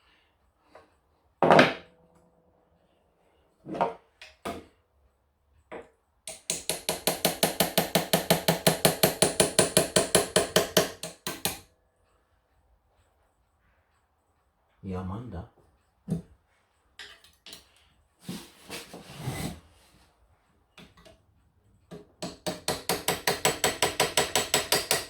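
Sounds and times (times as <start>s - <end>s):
small hammer tapping blade: 6.3s - 11.7s, 21.9s - 25.0s.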